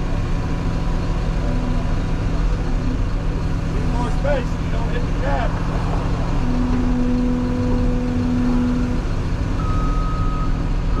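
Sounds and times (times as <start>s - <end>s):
diesel engine running: 0.0s - 11.0s
low steady tone: 0.0s - 11.0s
backup alarm beeping: 6.4s - 11.0s.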